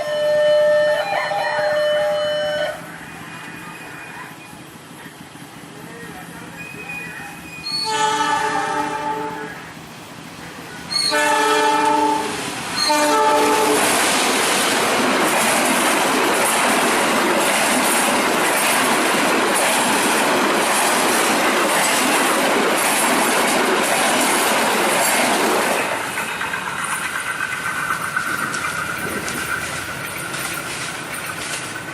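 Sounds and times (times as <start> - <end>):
train horn blasts: 0.0 - 2.8, 7.7 - 9.7, 10.9 - 13.9
train passing with clattering wheels: 0.0 - 31.9.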